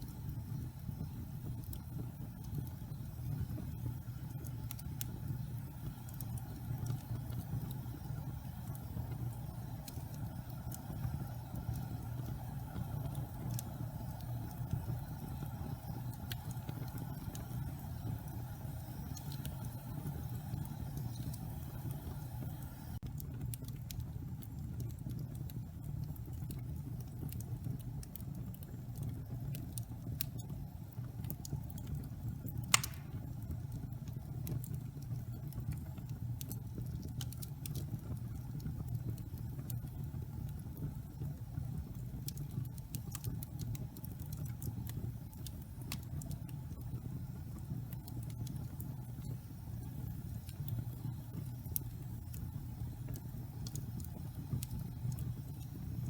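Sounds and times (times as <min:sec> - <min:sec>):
wood fire rumbling and crackling: 0:00.0 - 0:56.0
loud pop from fire: 0:32.7 - 0:33.3.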